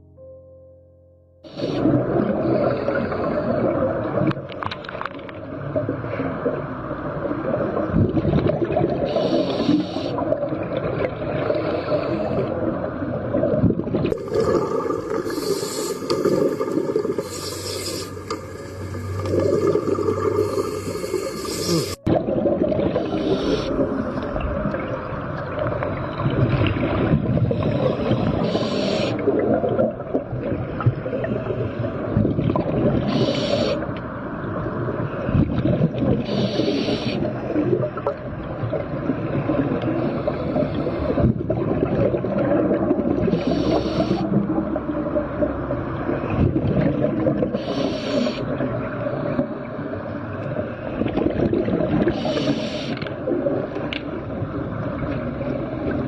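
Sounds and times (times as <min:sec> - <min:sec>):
underwater churning rumble: 0:01.8 - 0:56.0
diver exhaling bubbles: 0:07.4 - 0:34.0, 0:35.2 - 0:45.6, 0:46.3 - 0:49.7, 0:50.6 - 0:53.9.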